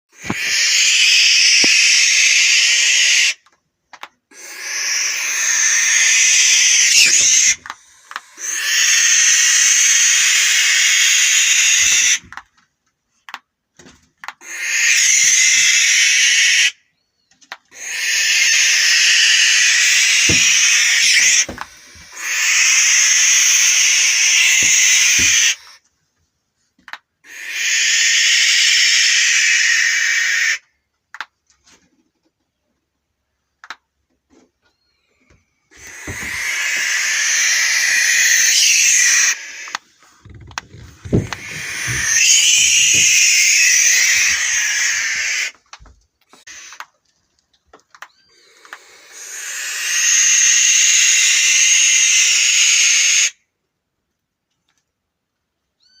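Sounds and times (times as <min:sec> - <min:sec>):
barn owl screeching: 0:00.1 - 0:03.5, 0:04.3 - 0:12.4, 0:14.4 - 0:16.8, 0:17.7 - 0:25.8, 0:27.2 - 0:30.7, 0:34.7 - 0:45.6, 0:46.3 - 0:46.9, 0:48.0 - 0:53.4.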